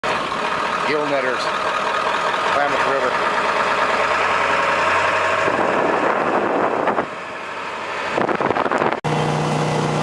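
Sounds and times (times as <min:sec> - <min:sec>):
boat engine running: 0:00.0 - 0:10.0
wind noise on microphone: 0:05.4 - 0:09.2.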